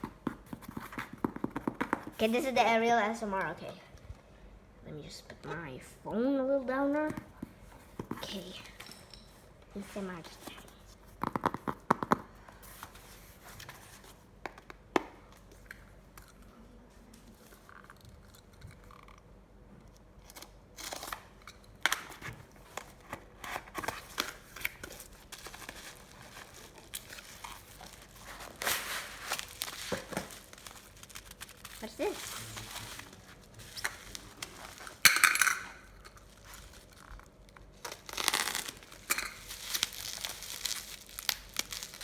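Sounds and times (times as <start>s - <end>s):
packaging crinkling and tearing: 19.9s - 42.0s.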